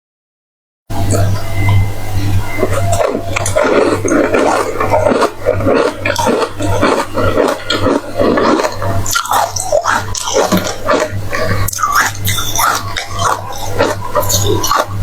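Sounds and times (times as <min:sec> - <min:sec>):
steady low hum: 0:00.9 - 0:15.0
crunching and chewing ice cubes: 0:02.6 - 0:15.0.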